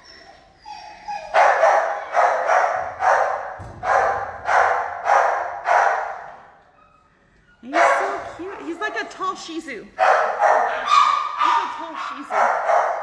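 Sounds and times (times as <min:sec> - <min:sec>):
dog barking: 0:01.3 - 0:06.4, 0:07.6 - 0:08.7, 0:10.0 - 0:13.0.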